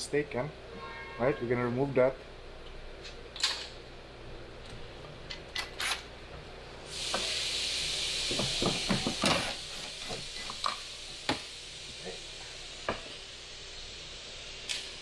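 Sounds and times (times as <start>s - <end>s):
steady hiss: 6.8s - 15.0s.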